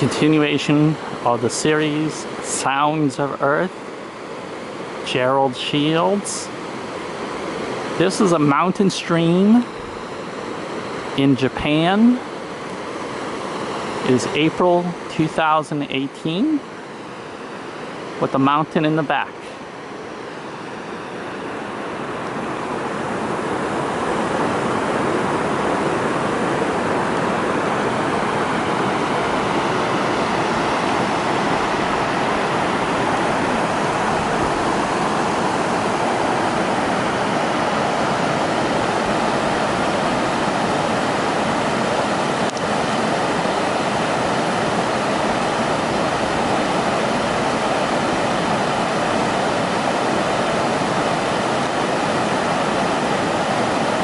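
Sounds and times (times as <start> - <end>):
stream rushing over rocks: 22.1 - 54.0.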